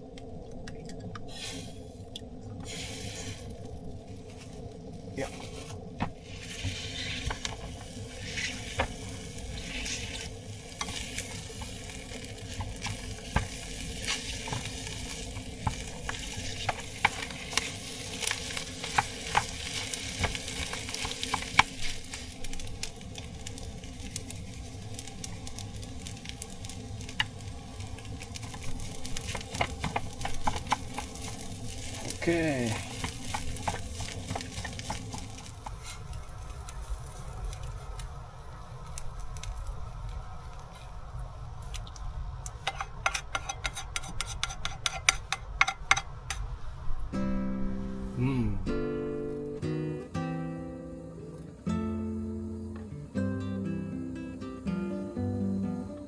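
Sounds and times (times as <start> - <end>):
food sizzling in a frying pan: 1.3 - 2.0, 2.6 - 40.7
utensil scraping a pan: 5.2 - 11.8, 12.5 - 22.4, 42.6 - 46.4.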